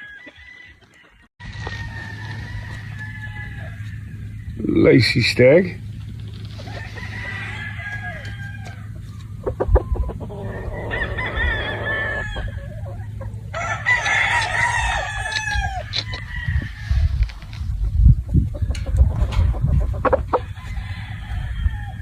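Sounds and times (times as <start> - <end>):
roosters crowing: 0.0 - 17.8, 18.5 - 22.0
chicken clucking: 8.2 - 14.2, 18.2 - 20.8.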